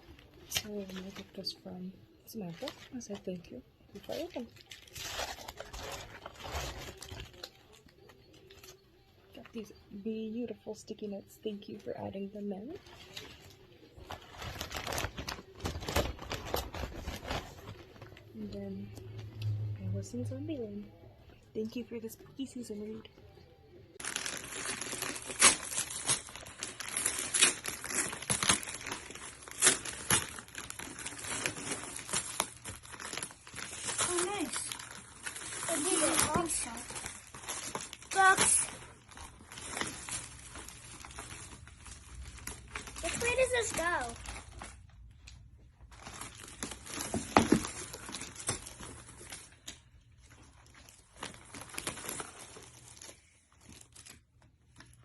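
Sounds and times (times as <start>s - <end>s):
gift wrapping rustling: 0.0s - 8.9s, 11.0s - 19.4s, 24.0s - 55.0s
packaging crinkling and crackling: 4.0s - 8.9s, 12.7s - 18.3s, 24.0s - 55.0s.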